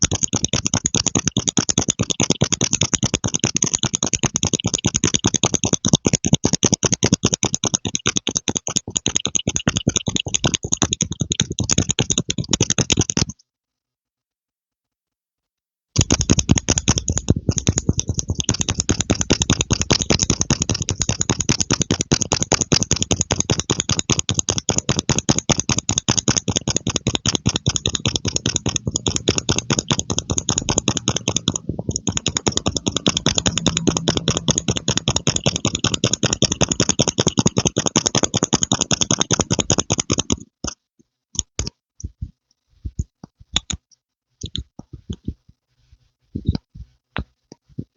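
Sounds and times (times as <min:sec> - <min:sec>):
rapid even clicking: 0:00.0 - 0:13.4, 0:16.0 - 0:45.5.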